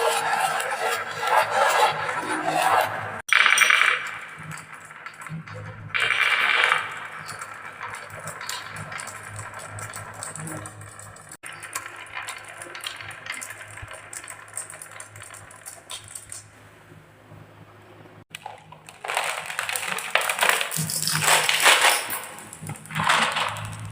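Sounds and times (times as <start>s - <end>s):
many marbles rattling together: 3.2s - 16.5s, 18.4s - 23.9s
marbles rolling down wooden run: 3.3s - 16.5s, 18.4s - 23.9s.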